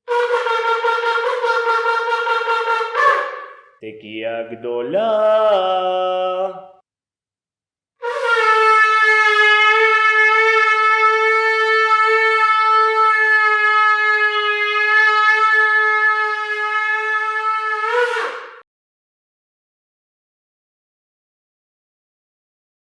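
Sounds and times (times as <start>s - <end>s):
shofar long blast: 8.0s - 18.6s.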